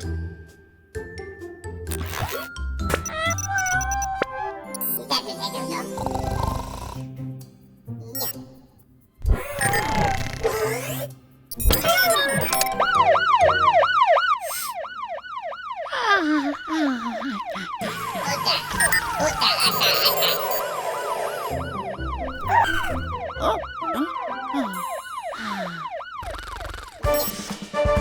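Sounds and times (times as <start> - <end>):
music: 0.0 - 14.0, 18.3 - 24.9, 27.0 - 28.0
cartoon siren wailing: 3.0 - 5.3, 9.6 - 10.9, 11.6 - 27.1.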